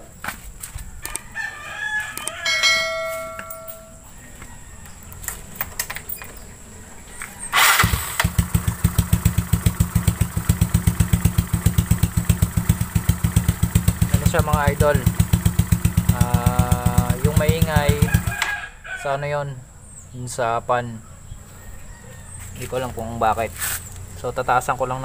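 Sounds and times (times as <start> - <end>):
rooster crowing: 0.9 - 5.4, 17.1 - 19.3, 21.0 - 22.9
motorcycle engine idling: 7.8 - 18.4.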